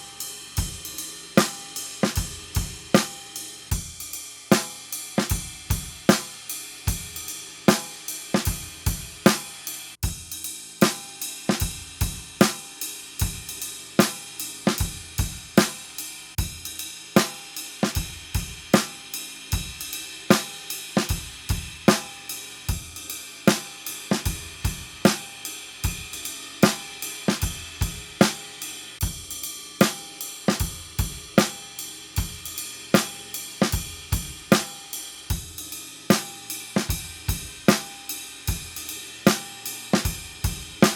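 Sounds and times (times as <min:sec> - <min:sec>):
hi-hat and cymbals: 0:00.0 - 0:40.9
snare drum strokes: 0:01.4 - 0:03.5, 0:04.5 - 0:05.4, 0:06.1 - 0:06.4, 0:07.7 - 0:10.0, 0:10.8 - 0:11.8, 0:12.4 - 0:12.8, 0:14.0 - 0:14.9, 0:15.6 - 0:16.0, 0:17.2 - 0:18.1, 0:18.7 - 0:19.0, 0:20.3 - 0:21.3, 0:21.9 - 0:22.4, 0:23.5 - 0:26.0, 0:26.6 - 0:28.6, 0:29.8 - 0:30.8, 0:31.4 - 0:31.8, 0:32.9 - 0:33.9, 0:34.5 - 0:34.9, 0:36.1 - 0:40.9.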